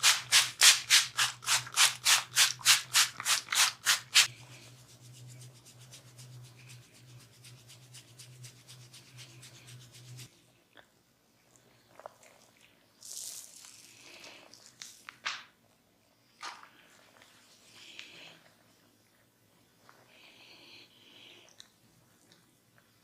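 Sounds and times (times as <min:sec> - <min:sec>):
hands rubbing hair and skin: 0:00.0 - 0:10.3
low steady hum: 0:04.2 - 0:12.8.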